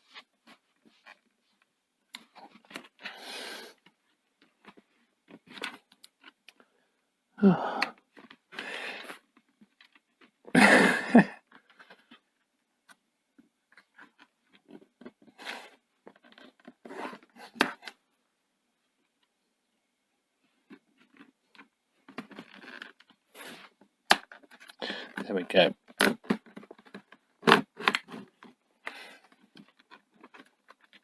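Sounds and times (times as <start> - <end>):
plastic scraping along a seam: 20.7 - 31.0.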